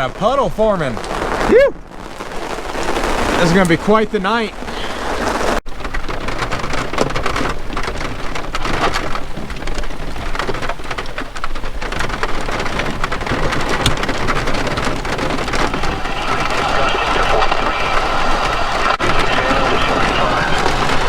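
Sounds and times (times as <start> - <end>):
heavy rain: 0.0 - 21.0.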